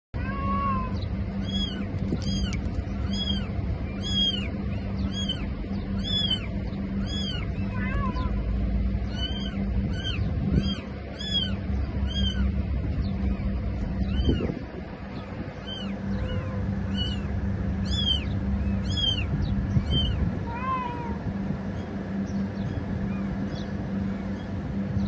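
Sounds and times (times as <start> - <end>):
kitten mewing: 0.2 - 4.5, 5.1 - 8.5, 9.1 - 12.5, 15.6 - 21.3
low hum: 0.2 - 25.0.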